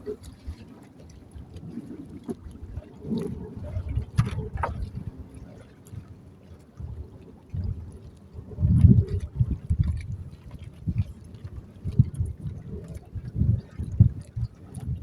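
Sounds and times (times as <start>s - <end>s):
sea water lapping: 0.0s - 15.0s
wind rumbling on microphone: 0.0s - 15.0s.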